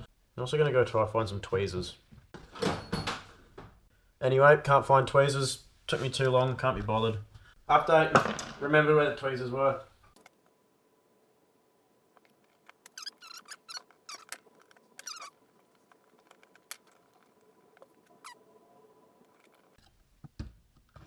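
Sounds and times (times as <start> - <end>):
tweezers squeaking on plastic: 12.2 - 18.6, 19.2 - 19.8.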